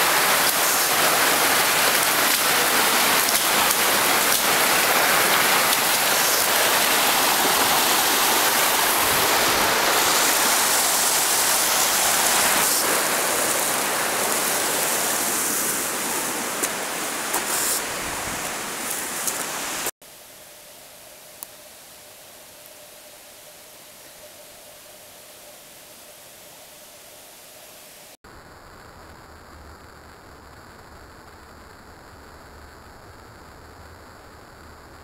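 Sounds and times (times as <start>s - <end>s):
water rushing: 0.0s - 19.9s
faint steady hiss: 0.0s - 35.0s.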